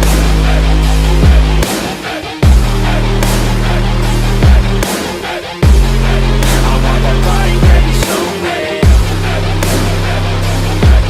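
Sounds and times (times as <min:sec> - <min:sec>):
electronic music with heavy bass: 0:00.0 - 0:11.0
deep sliding bass hit: 0:02.4 - 0:08.1, 0:08.8 - 0:11.0.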